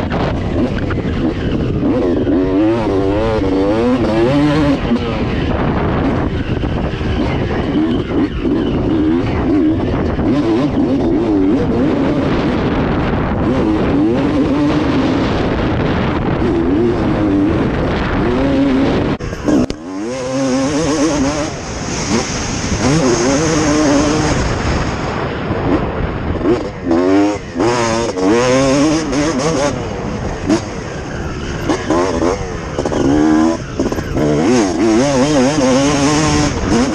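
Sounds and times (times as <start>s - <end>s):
motocross engine revving: 0.0s - 36.9s.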